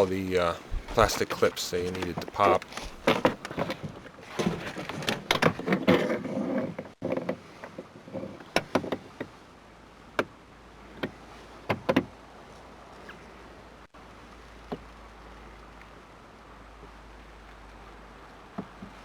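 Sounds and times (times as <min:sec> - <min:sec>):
plastic door panel rattling: 0:00.7 - 0:05.8.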